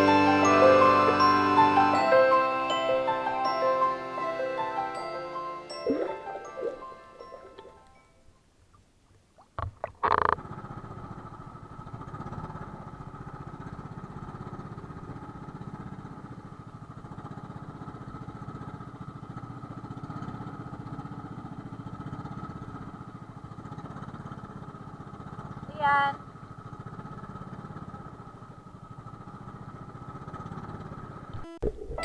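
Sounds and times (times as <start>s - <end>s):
engine running steadily: 0.0s - 8.0s, 10.0s - 31.9s.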